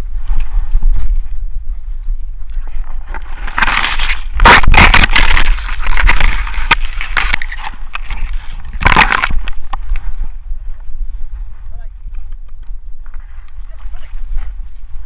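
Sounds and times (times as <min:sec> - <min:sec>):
reeds scraping against boat hull: 0:03.0 - 0:09.8
reed stems snapping: 0:03.1 - 0:10.1.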